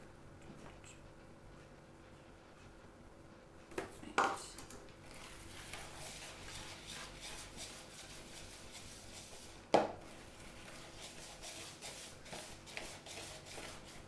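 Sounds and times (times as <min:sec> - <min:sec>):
utensils scraping and tapping bowl: 0:05.1 - 0:09.5, 0:10.6 - 0:14.0.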